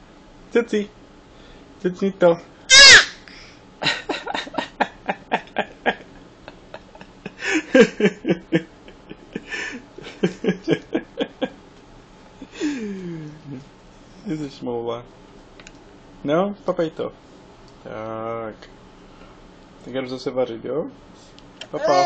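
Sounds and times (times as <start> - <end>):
toddler chuckling and babbling: 21.8 - 22.0.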